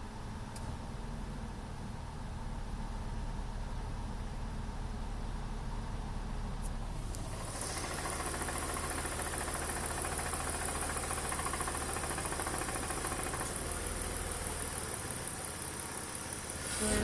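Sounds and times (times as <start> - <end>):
car engine idling: 0.0 - 17.0.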